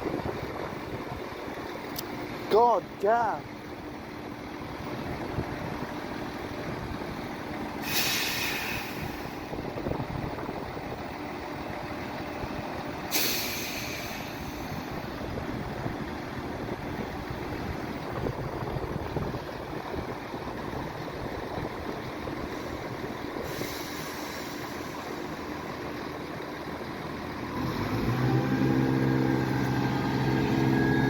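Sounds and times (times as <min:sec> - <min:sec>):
diesel train rumbling: 0:00.0 - 0:31.0
air brake hisses: 0:07.8 - 0:09.5, 0:13.1 - 0:14.9, 0:23.4 - 0:25.0.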